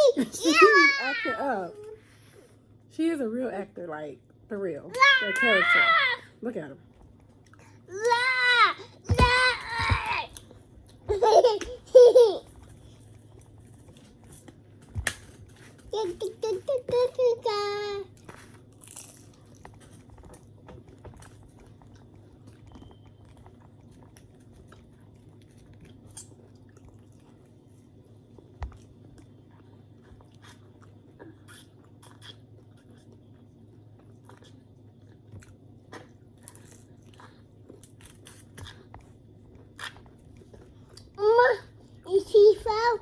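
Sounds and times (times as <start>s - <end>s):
chewing and biting food: 18.1s - 41.2s.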